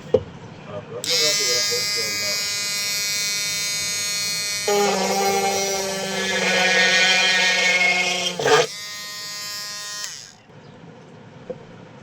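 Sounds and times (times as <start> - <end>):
motor rattle: 1.0 - 10.4
small electric motor buzzing: 1.0 - 10.5.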